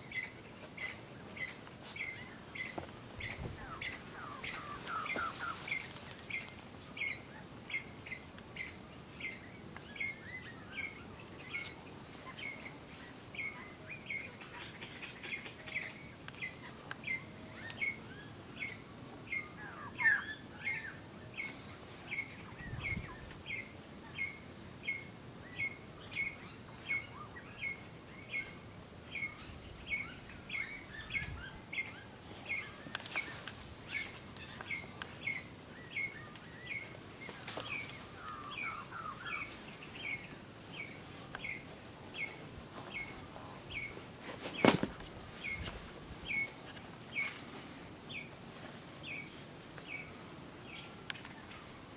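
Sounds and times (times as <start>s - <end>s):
other bird calls: 0.0s - 11.8s, 29.2s - 48.4s.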